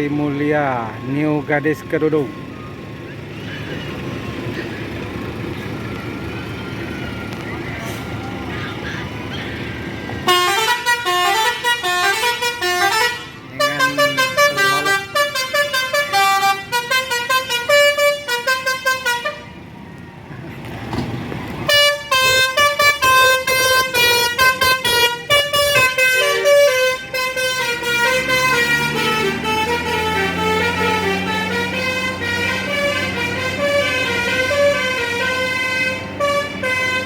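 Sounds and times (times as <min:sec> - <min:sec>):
multi-tone bus air horn tune: 0:10.2 - 0:19.6, 0:21.7 - 0:37.0.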